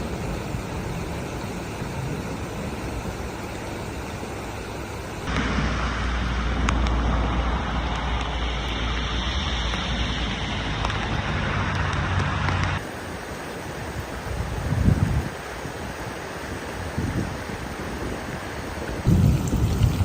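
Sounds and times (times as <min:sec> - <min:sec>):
rain: 0:00.0 - 0:20.0
running floodwater: 0:00.0 - 0:20.0
deep rumble: 0:05.2 - 0:12.8.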